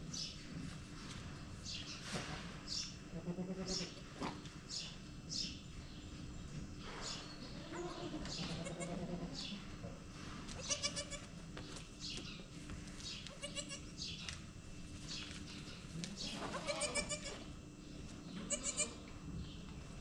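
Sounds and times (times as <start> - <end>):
goats bleating: 3.1 - 4.0, 7.5 - 9.6, 10.5 - 11.3, 13.3 - 13.9, 16.0 - 17.5, 18.4 - 19.1.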